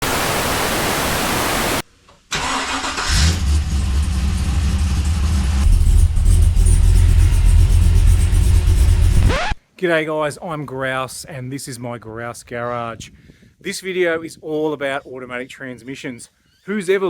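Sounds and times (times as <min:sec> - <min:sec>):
engine starting and rumbling: 0:02.3 - 0:09.5.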